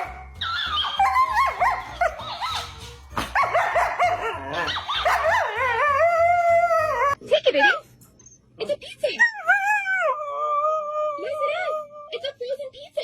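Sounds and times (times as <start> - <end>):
background music with low beat: 0.0 - 7.2
dog whining and yowling: 0.0 - 7.2.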